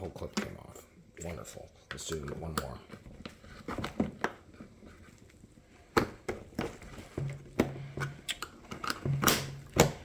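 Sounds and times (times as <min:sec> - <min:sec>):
plastic clicks and scraping: 0:05.9 - 0:10.0.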